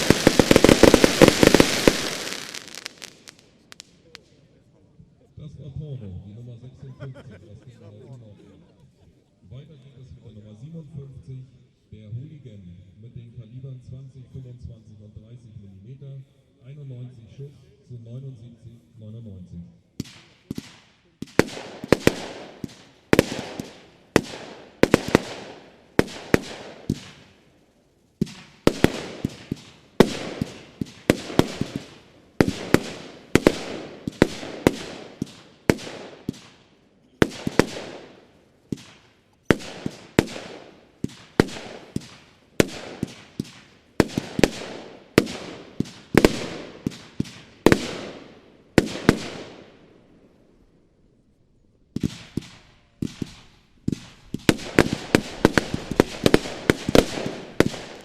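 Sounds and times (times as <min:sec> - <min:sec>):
firework battery bangs: 0:00.0 - 0:04.2.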